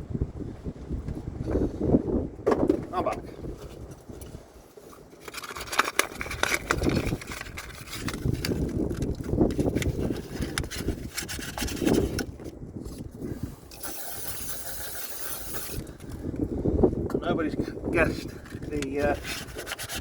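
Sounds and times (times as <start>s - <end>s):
wind hissing on microphone: 0.0s - 20.0s
sandpaper scrubbing on metal: 13.8s - 15.8s, 19.0s - 20.0s.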